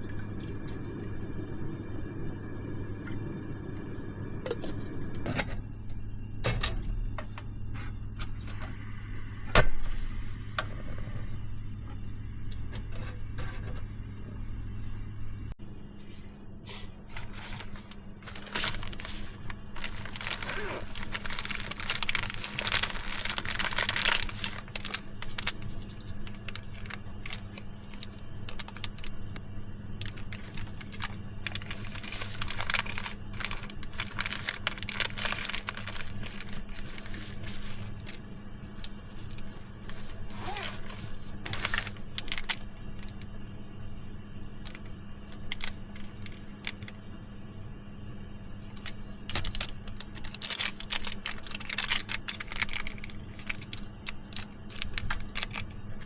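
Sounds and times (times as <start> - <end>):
steady low hum: 0.0 - 56.0
rustling and crinkling: 17.1 - 29.4, 30.0 - 43.4, 44.6 - 47.1, 48.6 - 56.0.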